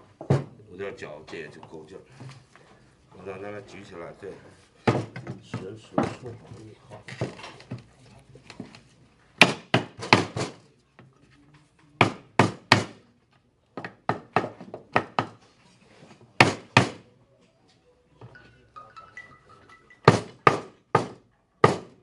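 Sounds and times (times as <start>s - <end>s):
hammer knocking on wood: 13.8s - 15.4s, 20.1s - 22.0s.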